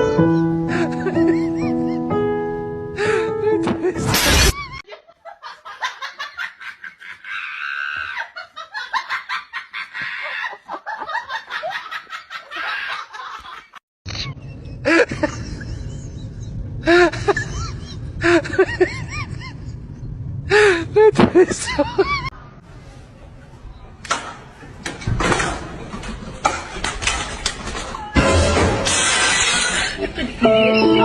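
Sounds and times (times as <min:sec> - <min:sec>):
people laughing: 0:00.7 - 0:02.0, 0:04.6 - 0:19.8, 0:20.6 - 0:22.3, 0:29.5 - 0:31.0
low background rumble: 0:14.3 - 0:22.4.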